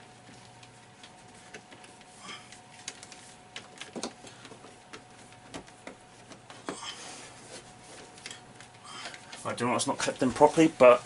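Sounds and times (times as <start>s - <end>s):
faint steady hum: 0.0s - 11.0s
cables clicking into plastic clips: 0.5s - 6.7s.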